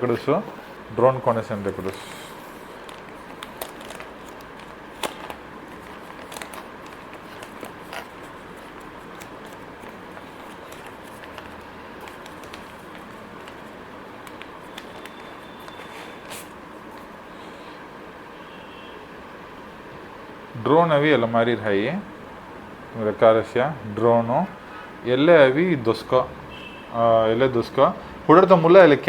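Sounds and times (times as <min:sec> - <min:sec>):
steady low hiss: 0:00.0 - 0:18.4.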